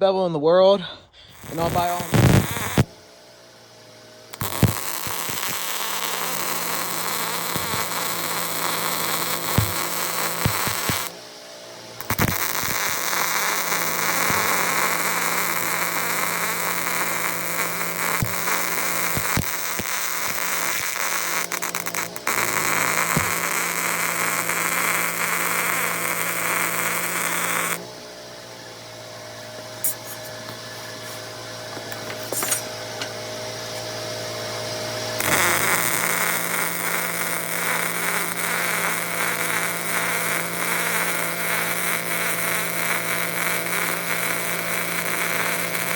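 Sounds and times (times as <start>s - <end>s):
welding arc crackling: 1.3s - 3.0s, 4.3s - 11.2s, 12.0s - 27.8s, 29.8s - 30.3s, 35.2s - 45.9s
welding machine hum: 1.3s - 45.9s.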